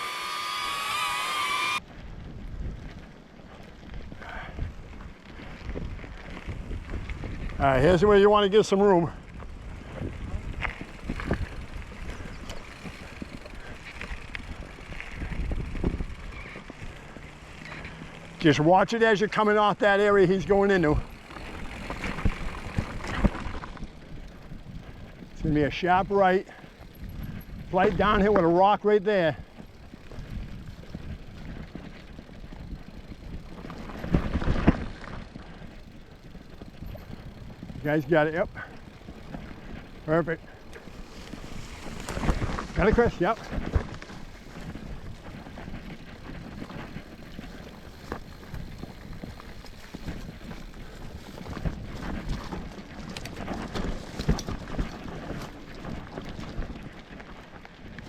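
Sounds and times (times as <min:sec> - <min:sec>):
bike tyres rumbling and rattling: 0:00.0 - 0:58.0
wind on microphone: 0:03.8 - 0:08.2, 0:09.0 - 0:17.9, 0:20.8 - 0:28.4, 0:36.5 - 0:57.0.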